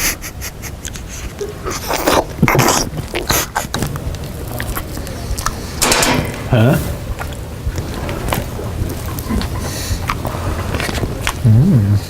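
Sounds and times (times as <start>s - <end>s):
person chewing noisily: 0.0s - 12.0s
sharp mouth clicks: 0.8s - 5.8s.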